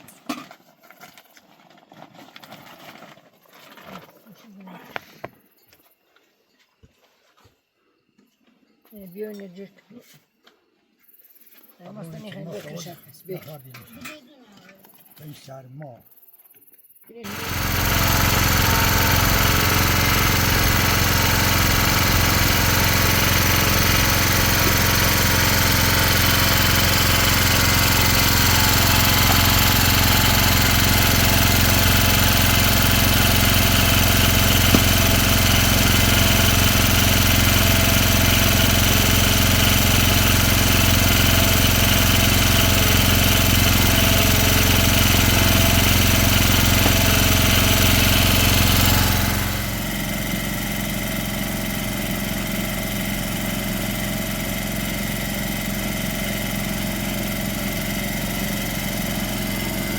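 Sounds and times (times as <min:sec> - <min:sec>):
engine running steadily: 0:17.3 - 0:59.9.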